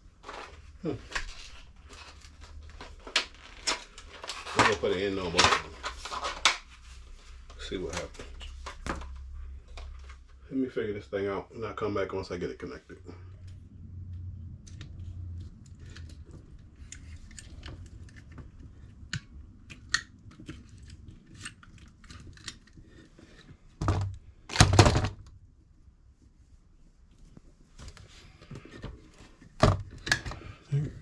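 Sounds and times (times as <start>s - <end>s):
clicks and rustles of hand work: 0.2s - 10.4s, 13.4s - 25.4s.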